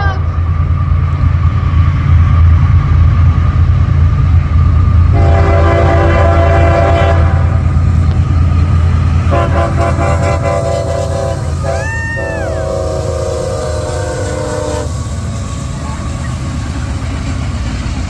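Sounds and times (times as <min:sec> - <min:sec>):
passing train rumble: 0:00.0 - 0:18.0
locomotive air horn chord: 0:05.1 - 0:07.6, 0:09.3 - 0:15.0.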